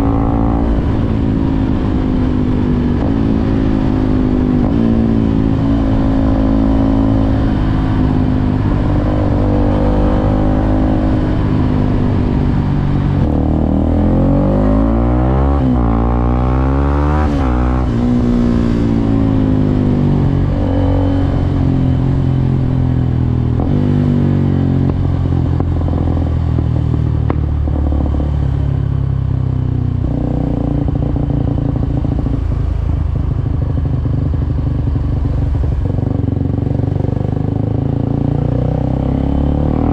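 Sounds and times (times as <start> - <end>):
motorcycle engine running: 17.3 - 39.9.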